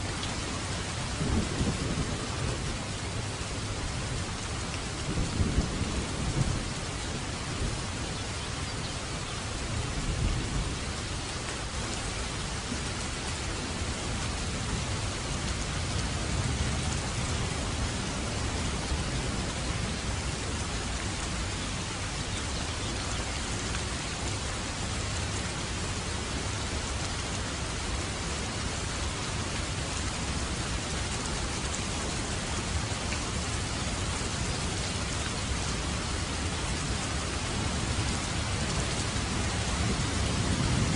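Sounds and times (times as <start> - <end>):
steady rain falling: 0.0 - 40.9
distant thunder rumble: 1.0 - 4.2, 5.0 - 8.0, 37.0 - 40.9.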